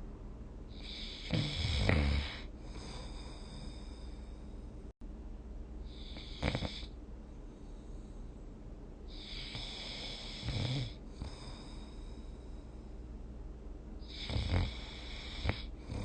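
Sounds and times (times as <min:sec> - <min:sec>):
person snoring: 0:00.8 - 0:04.4, 0:05.9 - 0:06.9, 0:09.1 - 0:12.3, 0:14.0 - 0:16.0.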